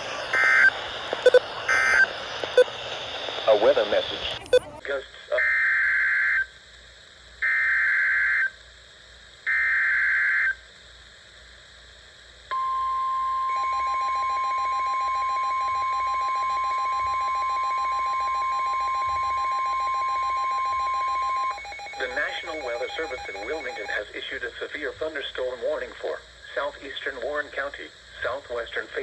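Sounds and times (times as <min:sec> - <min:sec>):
data bursts: 0:00.0 - 0:04.8, 0:18.9 - 0:24.0
long steady attention tone: 0:00.0 - 0:04.8, 0:13.5 - 0:24.0.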